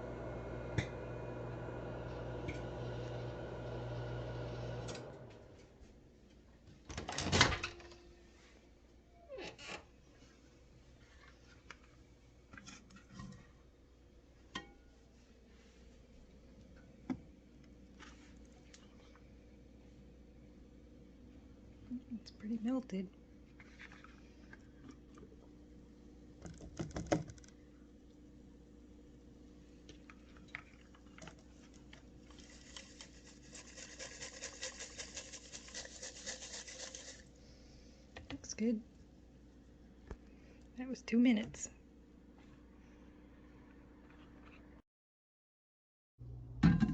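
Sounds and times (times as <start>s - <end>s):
microwave running: 0.0s - 5.8s.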